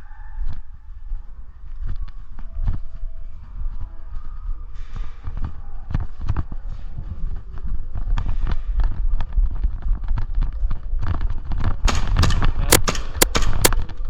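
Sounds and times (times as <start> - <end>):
airsoft gunfire cracks: 11.8 - 14.0.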